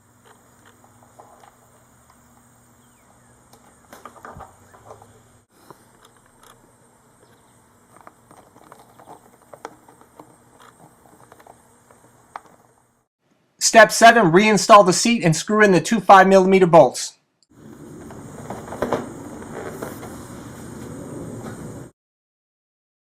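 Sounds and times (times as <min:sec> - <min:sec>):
hands handling small relay: 0:03.5 - 0:12.9.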